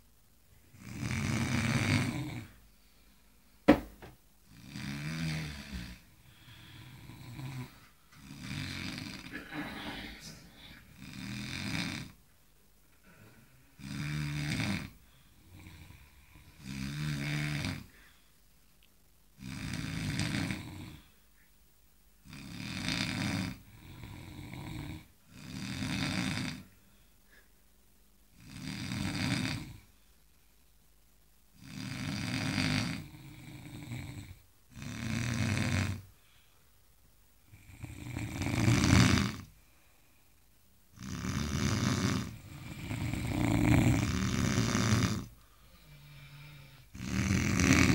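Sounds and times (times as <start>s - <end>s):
people snoring: 0.7s - 2.6s, 4.5s - 12.2s, 13.0s - 17.9s, 19.4s - 21.1s, 22.2s - 26.7s, 28.4s - 29.9s, 31.6s - 36.0s, 37.5s - 39.5s, 40.9s - 47.9s.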